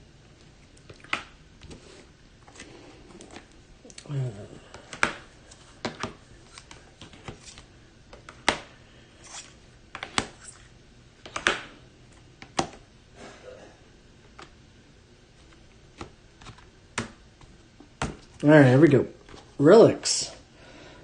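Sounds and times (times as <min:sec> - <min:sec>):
cards clicking and tapping on table: 0:04.7 - 0:05.2, 0:05.8 - 0:08.7, 0:09.9 - 0:10.5, 0:11.2 - 0:11.7, 0:16.0 - 0:17.2.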